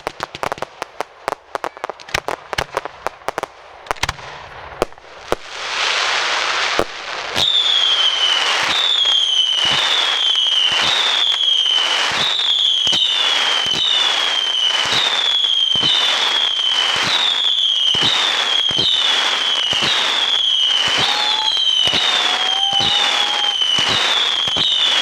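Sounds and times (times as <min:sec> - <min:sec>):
firework bangs: 0:00.0 - 0:25.0
firework crackling: 0:00.0 - 0:25.0
firework whistles: 0:07.3 - 0:25.0.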